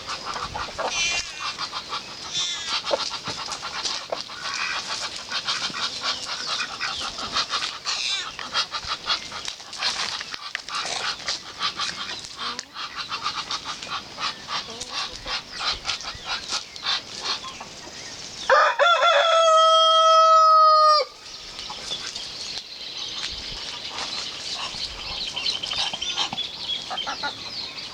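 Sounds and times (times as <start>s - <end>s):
chickens clucking: 0.0s - 22.3s, 23.1s - 27.9s
rooster crowing: 18.5s - 21.2s.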